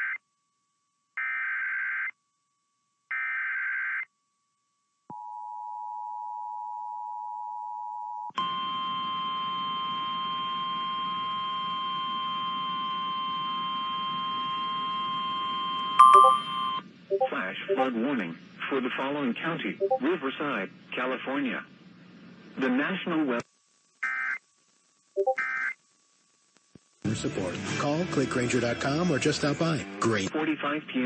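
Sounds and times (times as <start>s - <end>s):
two-note attention signal: 16.0s - 17.9s, 19.8s - 20.0s
steady alert tone: 16.0s - 18.0s, 19.8s - 20.0s, 25.2s - 25.4s.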